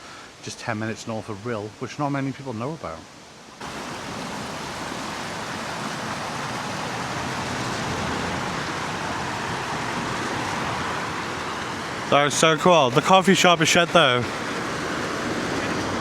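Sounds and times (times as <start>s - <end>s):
waterfall roaring over rocks: 3.2s - 16.0s.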